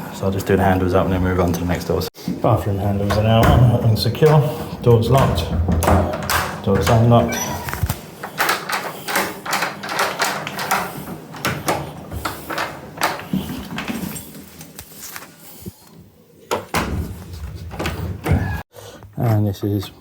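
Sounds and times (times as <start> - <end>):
door handle and latch clicks: 5.1 - 13.2.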